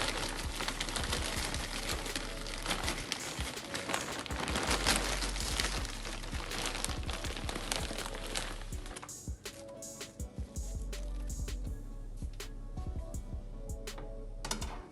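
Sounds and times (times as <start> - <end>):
rustling and handling noise: 0.0 - 10.2.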